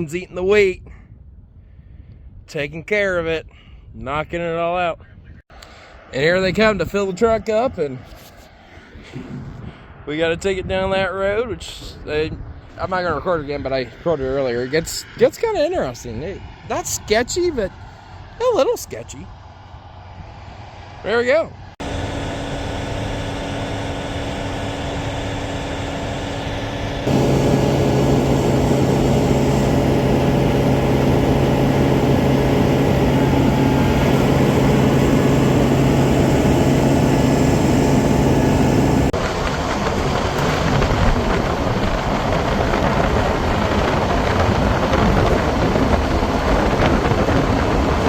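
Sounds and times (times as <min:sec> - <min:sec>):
wind: 0:00.0 - 0:48.0
combine harvester engine hum: 0:21.7 - 0:48.0
rushing noise: 0:21.8 - 0:48.0.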